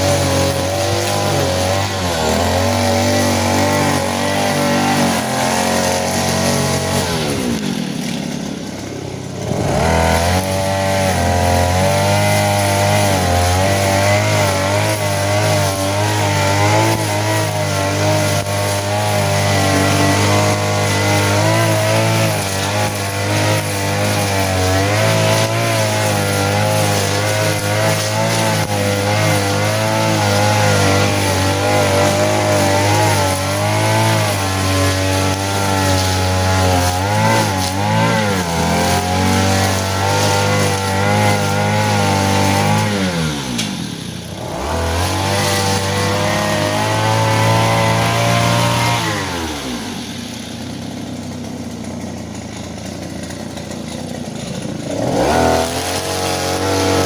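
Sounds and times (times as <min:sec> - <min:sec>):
grass cutter petrol engine: 0:00.0 - 0:57.0.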